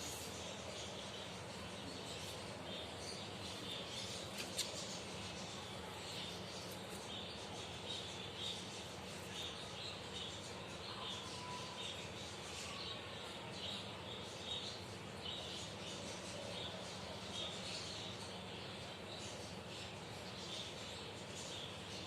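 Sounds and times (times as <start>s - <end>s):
steady hiss: 0.0s - 2.8s.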